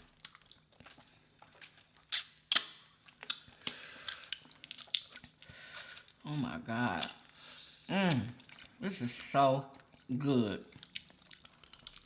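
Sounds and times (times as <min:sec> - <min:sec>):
wet chewing and squishing: 0:00.0 - 0:07.4, 0:08.0 - 0:12.0.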